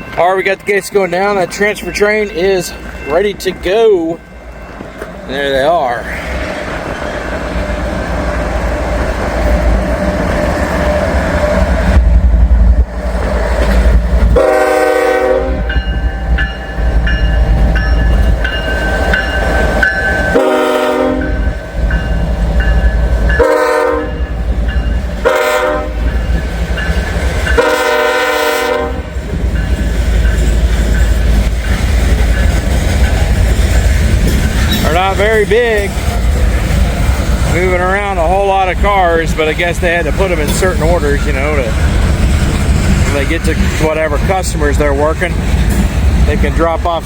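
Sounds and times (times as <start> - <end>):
crossing bell ringing: 0.0 - 6.0, 14.4 - 36.9, 37.7 - 42.2
wind rumbling on microphone: 6.3 - 14.5
train wheels clacking on rails: 12.9 - 47.0
locomotive air horn blasts: 14.4 - 15.7, 20.3 - 21.4, 23.4 - 24.2, 25.2 - 26.1, 27.6 - 29.2.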